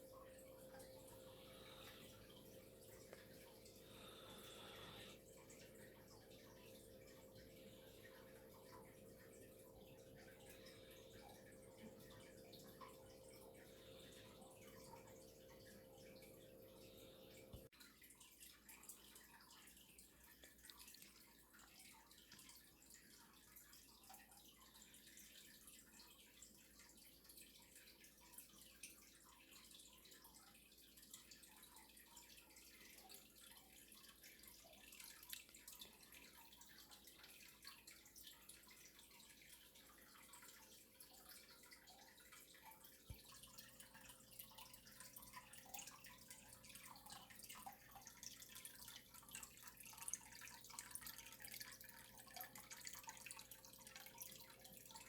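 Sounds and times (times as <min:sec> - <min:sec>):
faint low hum: 0:00.0 - 0:17.7.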